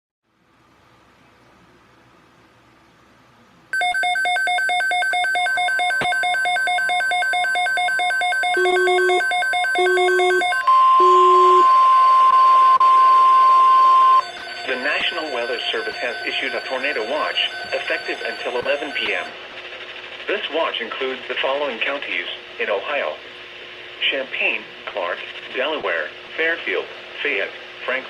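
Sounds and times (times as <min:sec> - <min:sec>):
short low beeps: 0:03.8 - 0:19.3
steady high alert tone: 0:03.8 - 0:19.4
buzzing digital data tones: 0:03.8 - 0:20.4.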